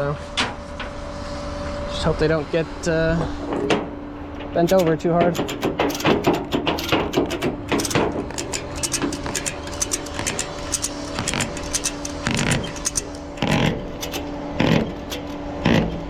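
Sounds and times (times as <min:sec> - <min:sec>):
truck engine idling: 0:04.0 - 0:16.0
clicks and rattles: 0:04.4 - 0:16.0
heavy knocks: 0:05.2 - 0:16.0.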